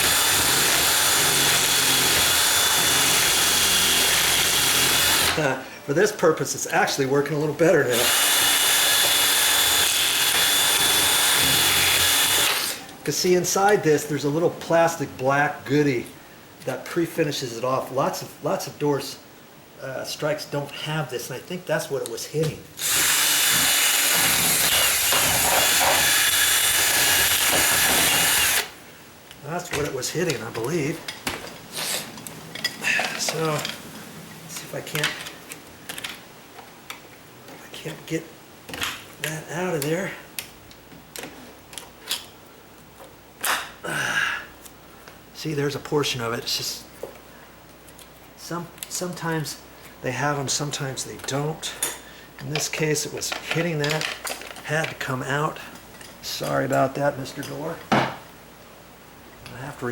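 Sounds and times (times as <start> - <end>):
electric drill grinding metal: 0.0 - 5.4, 7.9 - 12.8, 22.8 - 28.8.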